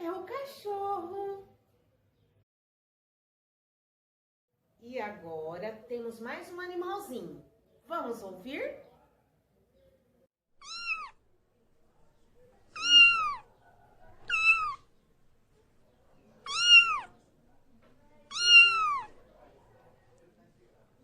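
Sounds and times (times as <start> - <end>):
cat meowing: 10.6 - 11.2, 12.7 - 13.5, 14.1 - 14.9, 16.4 - 17.2, 18.3 - 19.2.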